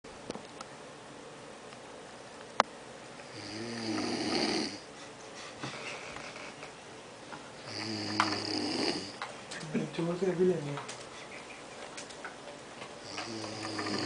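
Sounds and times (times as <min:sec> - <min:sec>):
man snoring: 0:03.3 - 0:04.9, 0:07.6 - 0:09.2, 0:13.0 - 0:14.0.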